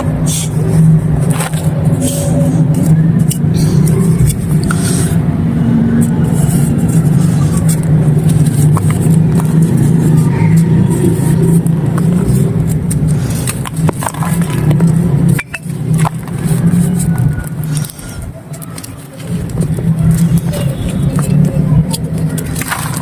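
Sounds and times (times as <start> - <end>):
loud low hum: 0.0 - 23.0
dry clay crumbling and cracking: 10.6 - 23.0.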